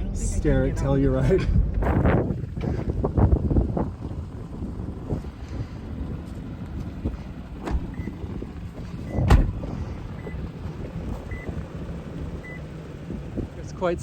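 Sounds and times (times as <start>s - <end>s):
wind on microphone: 0.0s - 12.4s
truck engine idling: 0.0s - 14.0s
thud: 9.2s - 9.6s.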